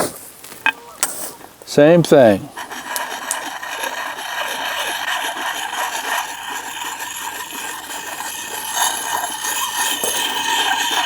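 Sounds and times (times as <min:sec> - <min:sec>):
sharpening stone scraping steel: 0:02.2 - 0:11.0.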